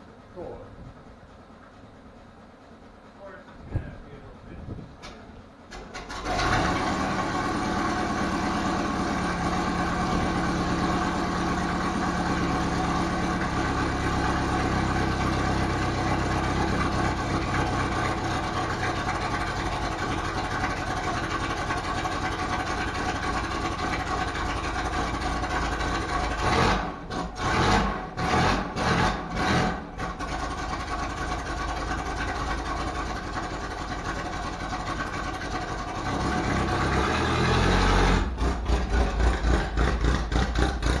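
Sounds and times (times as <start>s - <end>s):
car engine running: 0.0s - 41.0s.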